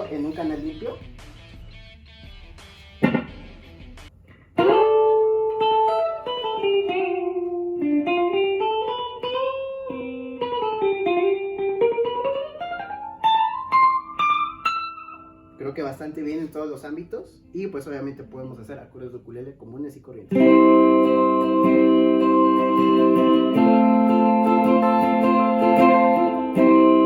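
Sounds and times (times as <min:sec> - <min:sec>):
electric ukulele melody: 0:02.1 - 0:15.6, 0:20.3 - 0:27.0
short sharp hit: 0:03.0 - 0:03.6.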